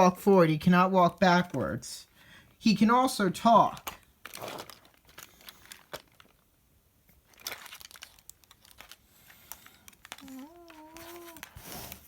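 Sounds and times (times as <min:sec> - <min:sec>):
plastic toy clicks and rustles: 0:03.6 - 0:06.4, 0:07.2 - 0:12.0.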